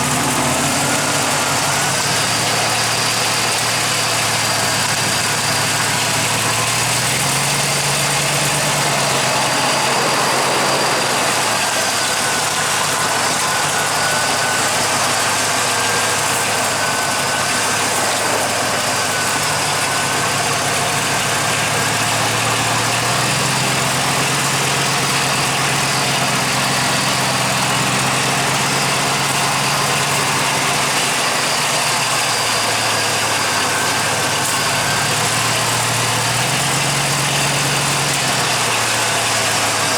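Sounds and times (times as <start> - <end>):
car engine running: 0.0 - 39.9
loud rushing noise: 7.4 - 15.4.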